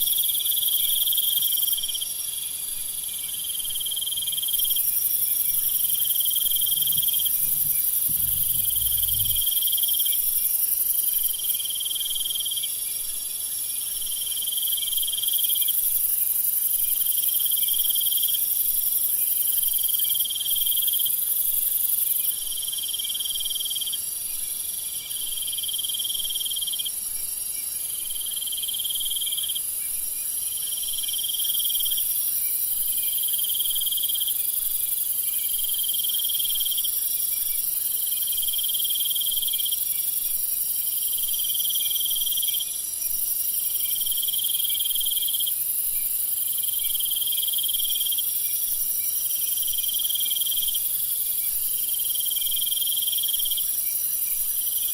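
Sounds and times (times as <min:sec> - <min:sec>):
crickets and insects shrilling: 0:05.6 - 0:10.5.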